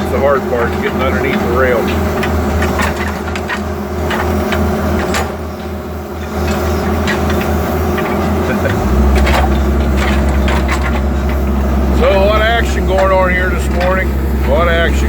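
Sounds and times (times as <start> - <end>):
bucket scraping and clanking rock: 0.0 - 15.0
diesel engine running: 0.0 - 15.0.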